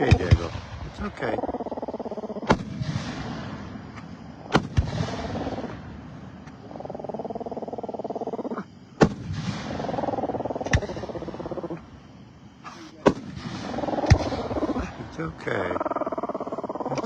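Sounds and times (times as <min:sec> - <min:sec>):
fireworks exploding: 0:00.0 - 0:01.1, 0:02.4 - 0:06.5, 0:09.0 - 0:09.9, 0:13.0 - 0:15.5
pet making pulsing vocal sounds: 0:00.0 - 0:02.6, 0:05.1 - 0:05.8, 0:06.5 - 0:08.9, 0:09.7 - 0:11.9, 0:12.5 - 0:17.0.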